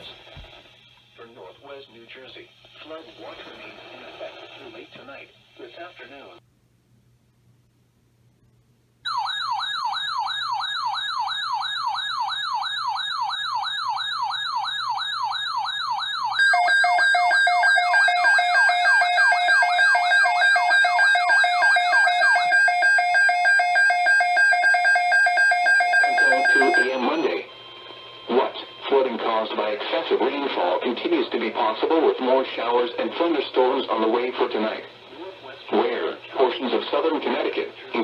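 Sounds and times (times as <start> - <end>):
electronic siren wailing: 9.1 - 29.0
steady siren tone: 9.1 - 29.5.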